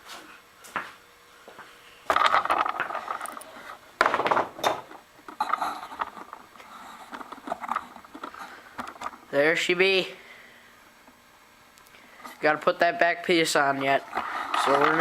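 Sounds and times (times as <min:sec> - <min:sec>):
rustling and scraping handling noises: 0:02.1 - 0:03.8, 0:04.4 - 0:09.5, 0:13.6 - 0:15.0.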